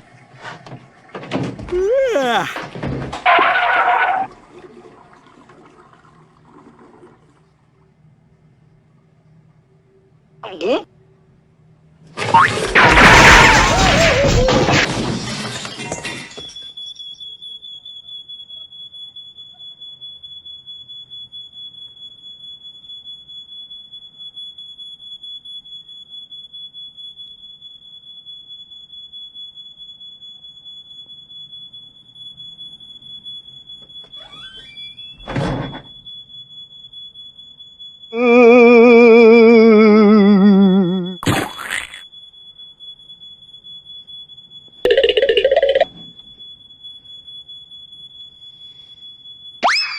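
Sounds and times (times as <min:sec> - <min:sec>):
loud noisy crash: 0:12.8 - 0:15.4
high-pitched electronic beep tone: 0:38.2 - 0:42.1, 0:44.8 - 0:46.0, 0:49.6 - 0:49.9.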